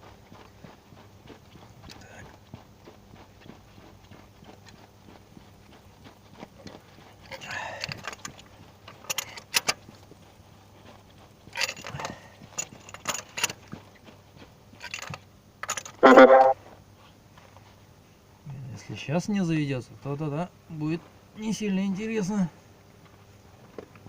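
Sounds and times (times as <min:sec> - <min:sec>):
metal hand tools clinking: 0:11.6 - 0:13.6
short loud pitched sound: 0:16.0 - 0:16.6.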